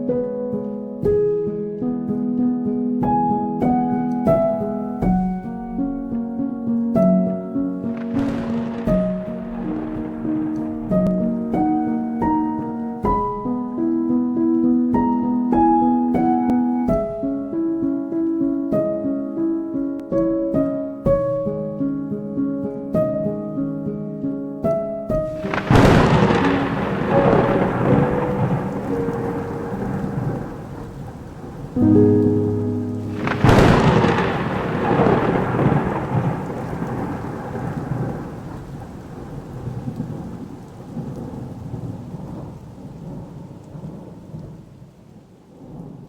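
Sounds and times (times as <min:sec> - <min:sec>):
rain: 0:00.0 - 0:46.0
thunderclap and rumble: 0:07.1 - 0:13.4, 0:25.2 - 0:46.0
plucked string arpeggio: 0:31.8 - 0:34.4.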